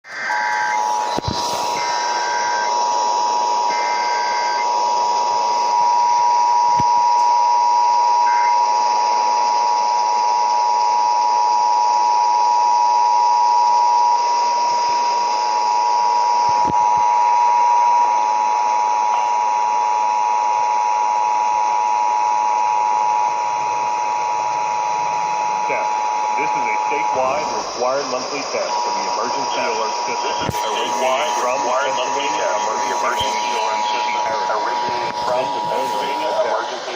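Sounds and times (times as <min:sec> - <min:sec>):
broadcast hiss: 0:00.1 - 0:05.8, 0:25.1 - 0:36.9
two-tone alert drone: 0:00.1 - 0:08.8, 0:22.8 - 0:36.9.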